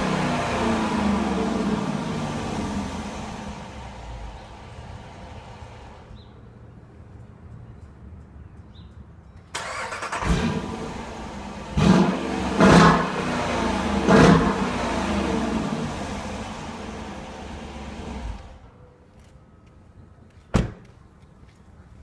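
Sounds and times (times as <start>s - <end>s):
car engine starting and revving: 0.0s - 6.2s, 9.6s - 18.6s.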